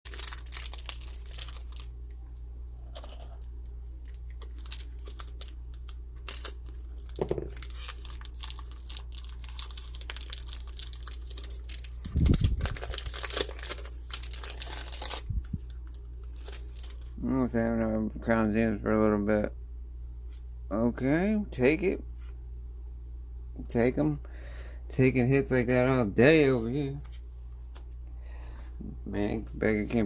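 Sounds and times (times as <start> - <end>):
foil wrapper tearing and crinkling: 0.1 - 1.9, 4.0 - 17.1
low hum: 1.8 - 20.9.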